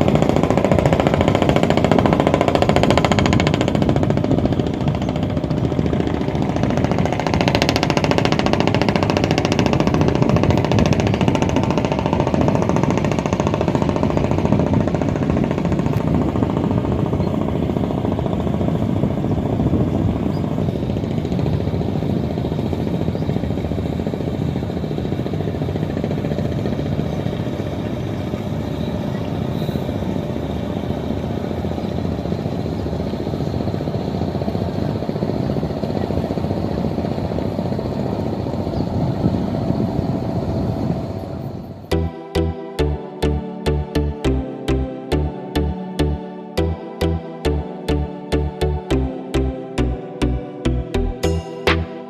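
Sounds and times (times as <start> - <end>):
boat engine running: 0.0 - 38.9, 41.9 - 52.0.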